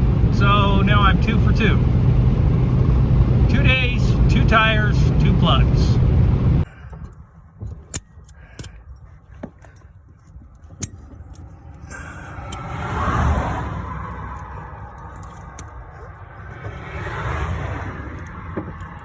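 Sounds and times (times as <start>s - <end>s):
car passing: 0.0s - 6.7s, 11.1s - 19.0s
low vehicle drone: 0.0s - 19.0s
sharp clicks and knocks: 6.9s - 11.8s.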